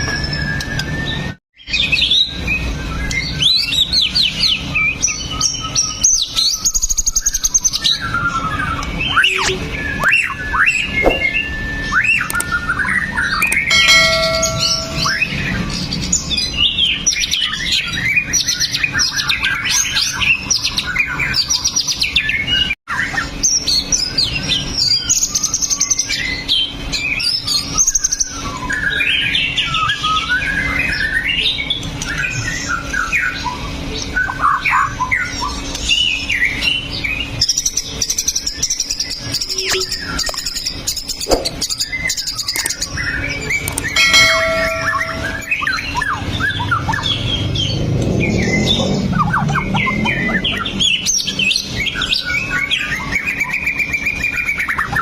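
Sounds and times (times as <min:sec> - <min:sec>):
bird singing whistles and chatter: 0:23.0 - 0:44.7.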